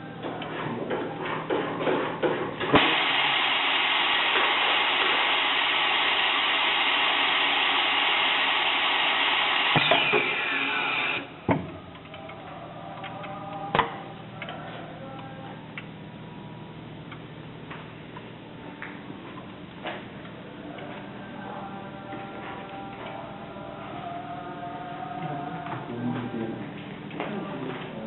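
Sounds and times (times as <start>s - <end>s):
low machine hum: 0.0s - 28.0s
falling whine: 2.8s - 11.4s.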